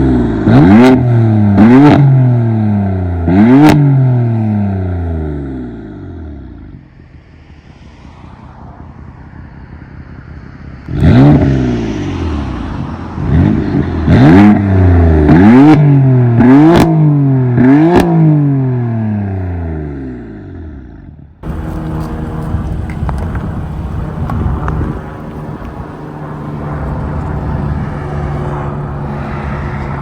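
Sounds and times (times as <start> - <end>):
car engine revving: 0.2 - 6.0, 10.8 - 18.7, 21.4 - 30.0
exhaust pops and cracks: 21.4 - 30.0.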